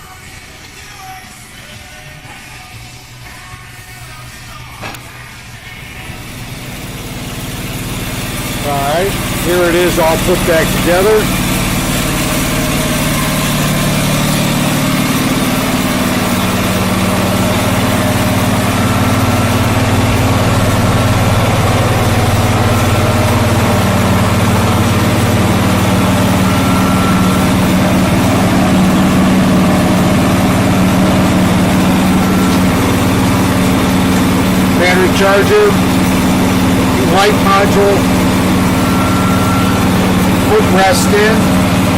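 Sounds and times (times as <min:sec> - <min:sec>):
garden tractor engine idling: 0:05.8 - 0:41.9.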